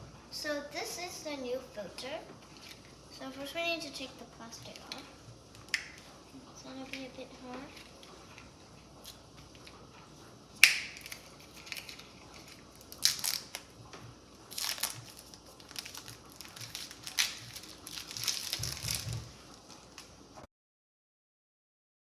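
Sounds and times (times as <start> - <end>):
plastic wrapping crinkling: 10.6 - 20.2.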